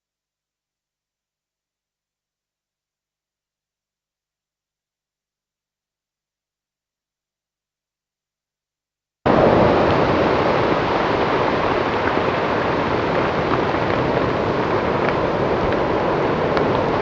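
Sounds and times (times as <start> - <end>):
wind noise on microphone: 9.3 - 17.0.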